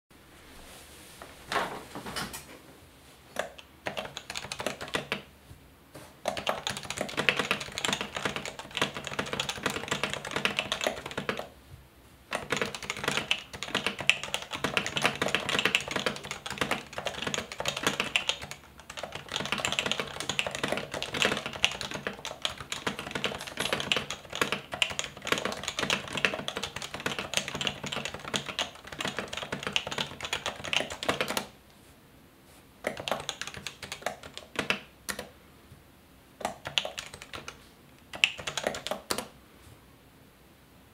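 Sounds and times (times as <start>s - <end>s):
keyboard typing: 3.4s - 5.3s, 6.2s - 11.5s, 12.3s - 31.5s, 32.8s - 35.3s, 36.4s - 39.3s.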